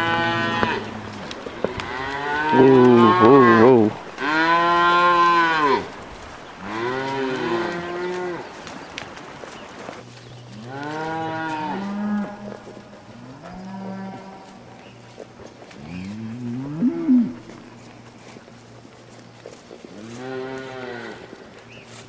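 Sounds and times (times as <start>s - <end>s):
cattle mooing: 0.0s - 6.0s, 6.6s - 8.5s, 10.6s - 14.7s, 15.8s - 17.8s, 20.0s - 21.3s.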